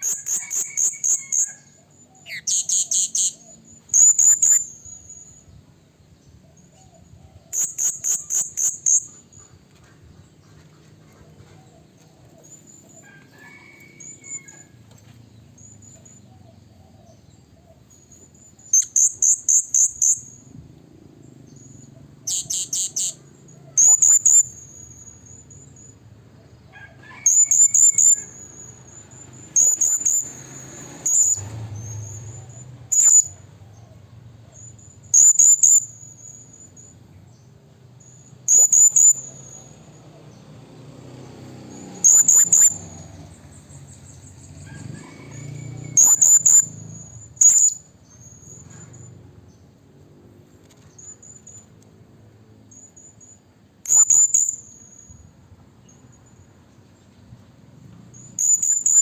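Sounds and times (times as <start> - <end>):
parrot shrill squeaky calls: 0.0 - 5.3, 13.4 - 14.7, 27.0 - 28.8, 31.1 - 33.3, 38.5 - 39.6, 53.8 - 55.1
soft high chirps: 0.0 - 9.8, 11.7 - 26.2, 27.2 - 33.6, 34.2 - 40.4, 41.7 - 49.6, 50.6 - 51.9, 52.6 - 57.4, 58.1 - 59.0.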